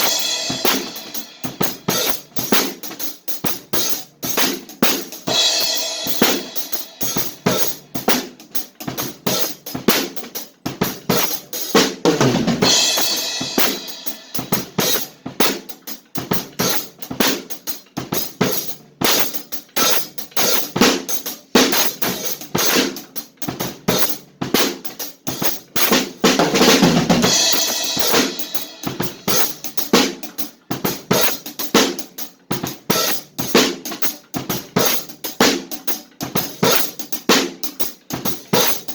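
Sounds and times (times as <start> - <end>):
fast drum kit playing: 0.0 - 38.9
cymbal crashes: 12.6 - 15.0, 27.2 - 29.8.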